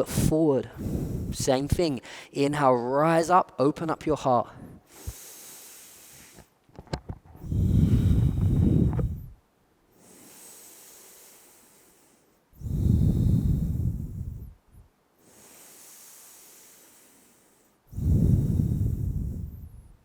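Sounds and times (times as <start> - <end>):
person inhaling: 0.7 - 1.4, 2.0 - 2.4, 4.6 - 6.6, 7.4 - 20.0.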